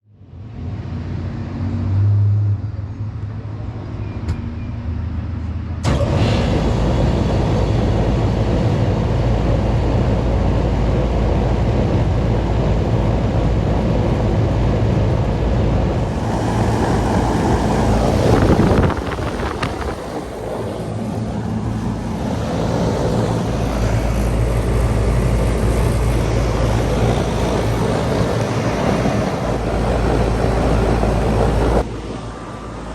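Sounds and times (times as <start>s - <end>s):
air conditioning unit rumbling: 5.8s - 31.9s
low steady hum: 6.8s - 31.8s.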